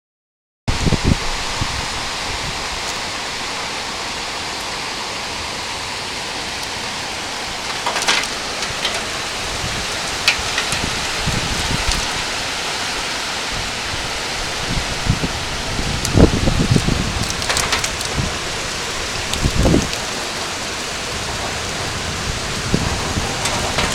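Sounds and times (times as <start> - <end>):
rain falling: 0.7 - 23.9
sharp raindrop hits: 7.4 - 23.9.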